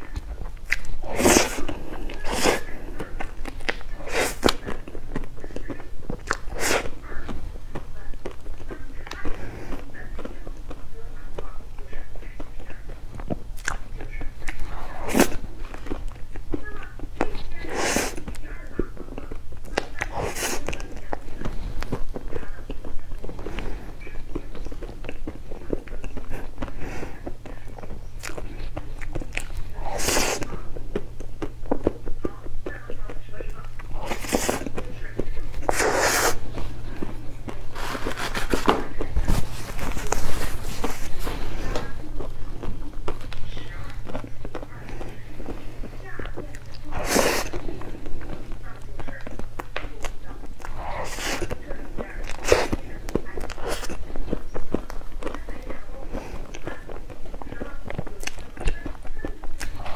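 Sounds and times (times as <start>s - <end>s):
wet mouth clicks: 0.0s - 6.9s, 56.2s - 59.9s
person chewing: 0.0s - 59.9s
steady low hum: 0.0s - 59.9s.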